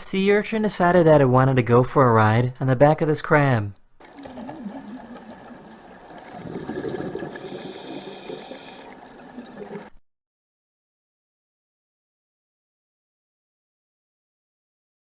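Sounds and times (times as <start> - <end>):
faint steady tones: 4.0 - 9.9
underwater watery rush: 4.0 - 10.0.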